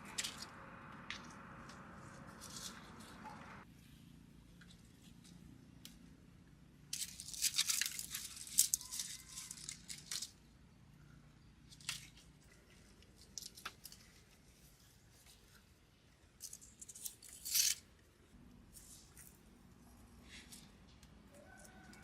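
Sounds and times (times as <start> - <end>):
foliage rustling and tearing: 6.9 - 10.4.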